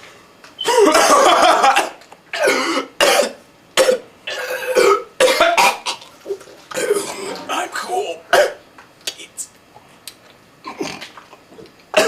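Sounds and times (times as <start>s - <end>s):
man coughing: 0.7s - 6.0s, 8.3s - 8.6s.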